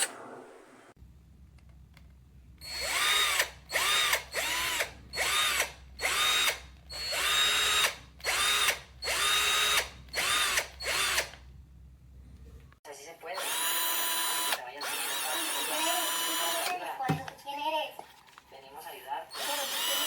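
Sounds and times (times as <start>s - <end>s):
cordless drill motor whining: 2.6s - 11.4s, 13.4s - 16.8s, 19.3s - 20.0s.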